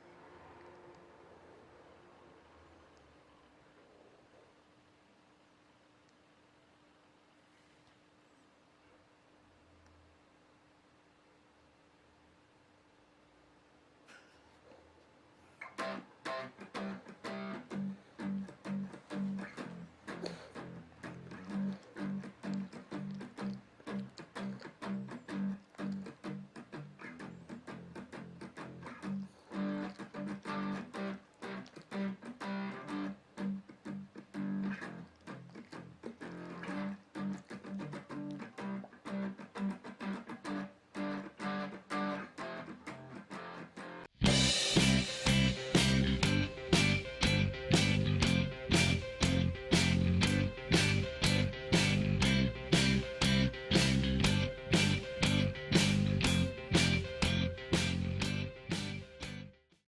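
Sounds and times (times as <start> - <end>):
guitar strumming chords: 15.7 - 59.6.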